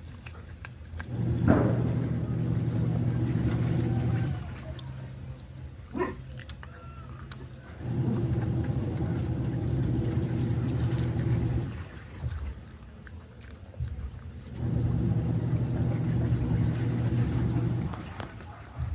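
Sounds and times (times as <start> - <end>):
small motor running: 7.8 - 11.8, 14.5 - 18.0.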